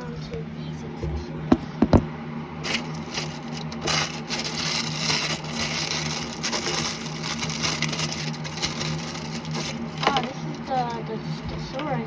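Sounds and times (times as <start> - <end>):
plastic packaging crinkling: 2.6 - 11.1.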